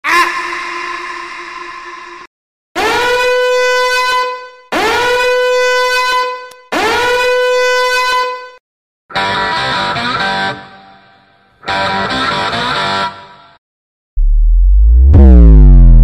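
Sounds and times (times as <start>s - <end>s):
buzzy alarm horn blasts: 2.8s - 8.6s.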